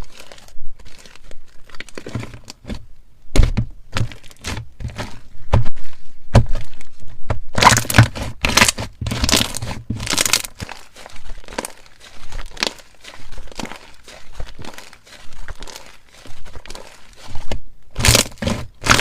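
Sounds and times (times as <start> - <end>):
slime squeezed with crunching ice: 0.0 - 2.7, 7.6 - 19.0.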